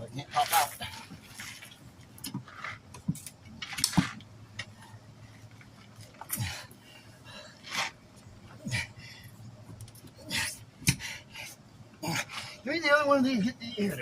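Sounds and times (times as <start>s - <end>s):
tire spoons scraping metal rim: 0.0s - 6.7s, 7.3s - 8.0s.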